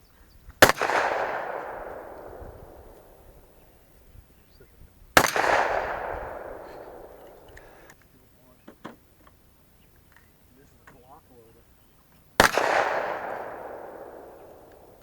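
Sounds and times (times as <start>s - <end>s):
gunshots with echo: 0.6s - 4.0s, 5.2s - 8.0s, 12.4s - 15.0s.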